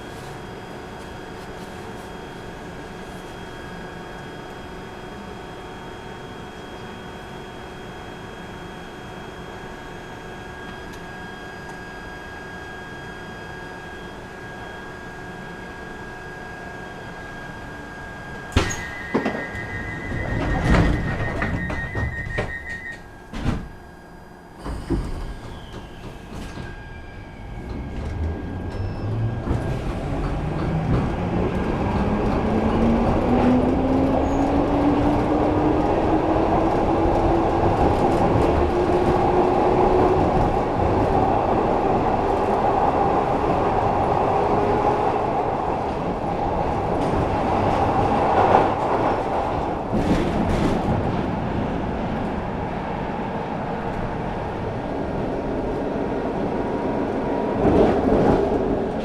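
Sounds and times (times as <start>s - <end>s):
train motor whine: 10.5s - 35.4s.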